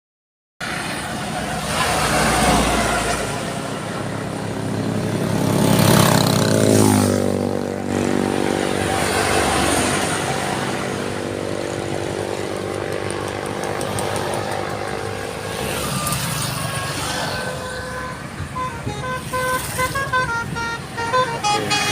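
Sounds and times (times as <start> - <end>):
vehicle engine passing: 0.7 - 21.9.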